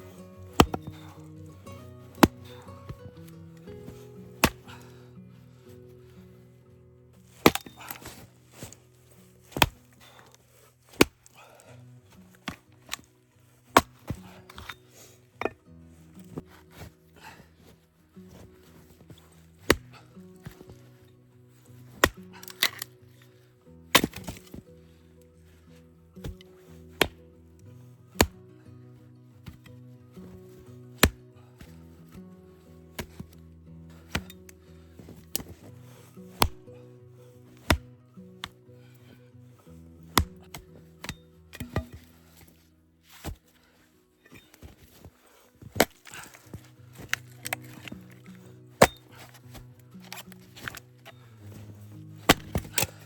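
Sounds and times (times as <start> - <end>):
axe chopping wood: 0.0 - 5.1, 7.3 - 8.8, 9.4 - 11.6, 12.4 - 14.8, 18.3 - 20.8, 21.8 - 22.9, 23.9 - 24.6, 26.2 - 27.2, 28.2 - 28.4, 29.4 - 31.9, 32.9 - 36.8, 37.5 - 39.0, 40.0 - 43.5, 44.3 - 53.0
soft background music: 0.0 - 53.0.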